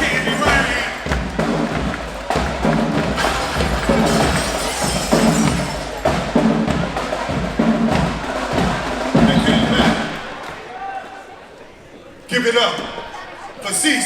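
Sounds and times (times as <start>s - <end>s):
marching band playing: 0.0s - 10.7s
drums beating: 0.0s - 11.2s.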